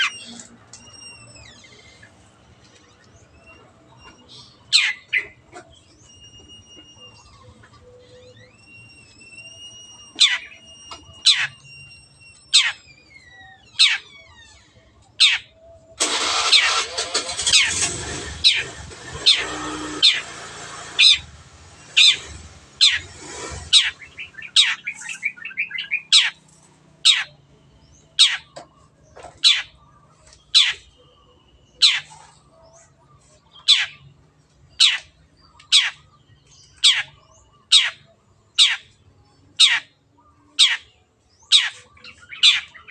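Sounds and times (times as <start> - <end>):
bird giving sharp high calls: 3.3 - 6.2, 9.1 - 14.3, 15.2 - 28.6, 29.3 - 31.0, 31.6 - 34.1, 34.7 - 36.1, 36.7 - 39.0, 39.6 - 42.9.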